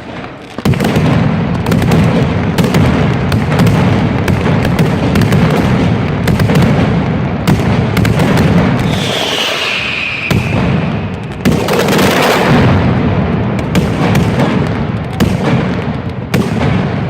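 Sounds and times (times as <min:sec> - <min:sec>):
aerial fireworks booming and crackling: 0:00.0 - 0:17.0
descending firework whistle: 0:08.8 - 0:11.5.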